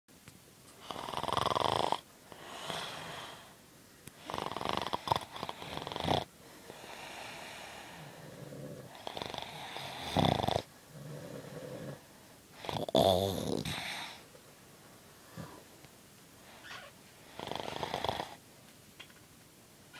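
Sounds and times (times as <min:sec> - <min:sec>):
loud rough snoring: 0:00.8 - 0:03.5, 0:04.2 - 0:06.3, 0:06.9 - 0:14.2, 0:17.3 - 0:18.4
quiet breathing: 0:02.0 - 0:18.4.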